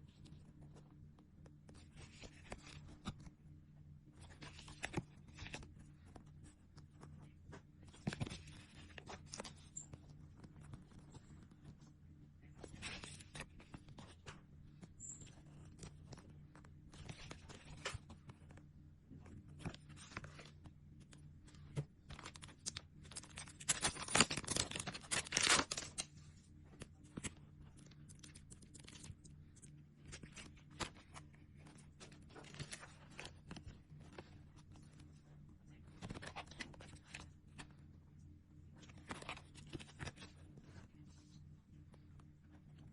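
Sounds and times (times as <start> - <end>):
packaging crinkling: 22.2 - 26.1.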